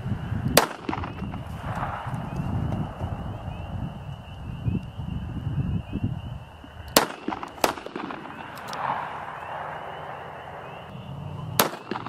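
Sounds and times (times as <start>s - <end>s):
shotgun shots: 0.6s - 2.0s, 6.9s - 9.2s, 11.6s - 12.0s.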